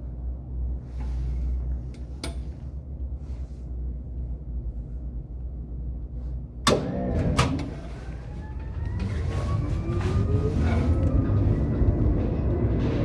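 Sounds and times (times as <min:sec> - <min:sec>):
tram interior rumble: 0:00.0 - 0:13.0
tram doors slamming and rattling: 0:06.6 - 0:13.0.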